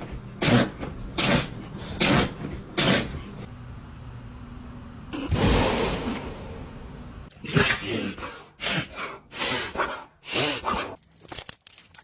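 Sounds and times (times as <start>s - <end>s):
dog sneezing: 0.4s - 3.1s.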